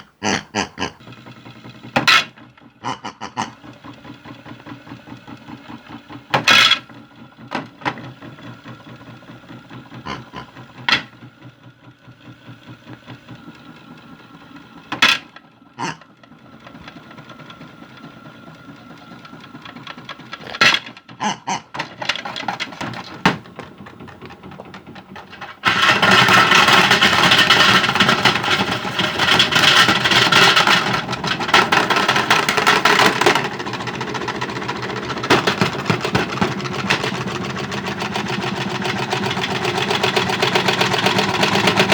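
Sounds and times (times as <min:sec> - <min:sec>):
loud continuous clatter: 0:01.0 - 0:02.8, 0:03.5 - 0:41.9
small electric motor running: 0:07.8 - 0:20.8
hard objects knocking in drum: 0:20.4 - 0:37.3.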